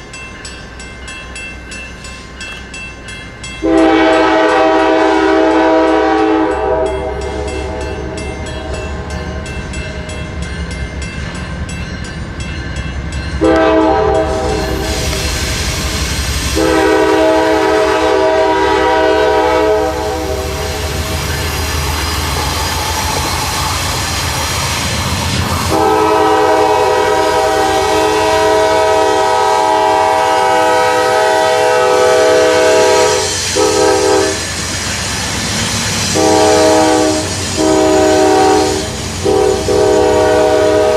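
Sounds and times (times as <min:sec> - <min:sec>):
train rumble: 0:00.0 - 0:40.9
train air horn: 0:03.6 - 0:08.0, 0:13.4 - 0:15.3, 0:15.9 - 0:23.9, 0:25.5 - 0:34.6, 0:36.1 - 0:40.9.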